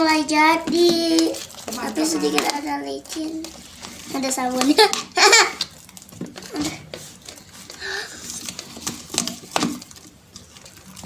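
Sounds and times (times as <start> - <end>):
slime squelching while stirred: 0.0 - 11.0
child vocal sound: 1.2 - 3.4.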